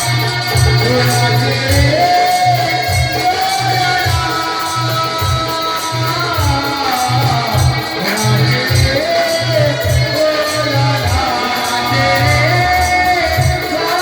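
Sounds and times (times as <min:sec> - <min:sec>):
light percussion ticking: 0:00.0 - 0:14.0
gliding melody line: 0:07.2 - 0:14.0
pulsing bass beat: 0:11.9 - 0:13.8.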